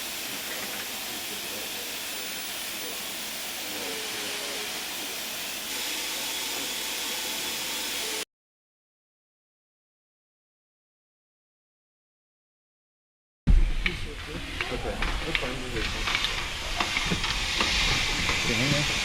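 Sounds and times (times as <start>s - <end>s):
hissing rush of noise: 0.0s - 8.2s, 13.6s - 19.0s
faint voices: 13.9s - 19.0s.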